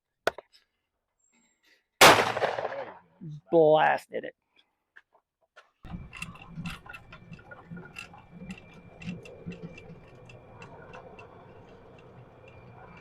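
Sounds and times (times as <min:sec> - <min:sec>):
faint steady hum: 0:05.9 - 0:13.0
rapid light clicks: 0:05.9 - 0:13.0.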